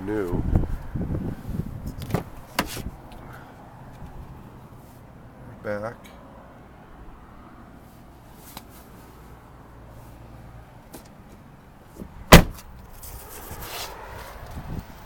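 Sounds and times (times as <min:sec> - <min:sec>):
car door slamming: 0:02.0 - 0:02.9, 0:12.0 - 0:12.7.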